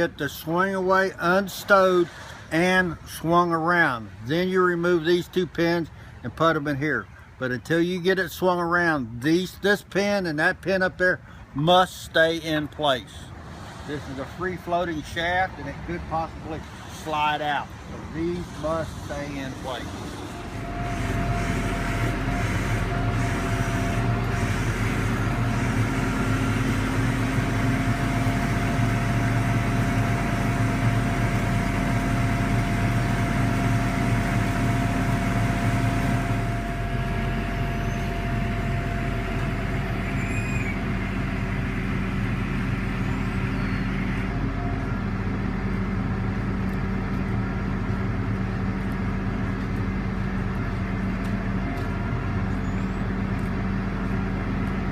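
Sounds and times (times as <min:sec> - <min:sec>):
diesel engine running: 0:00.0 - 0:54.9
steady whine: 0:12.1 - 0:54.9.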